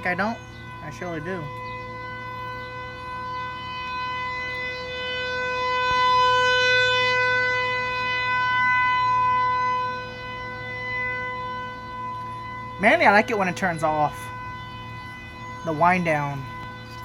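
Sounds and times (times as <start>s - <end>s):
tornado warning siren: 0.0s - 17.0s.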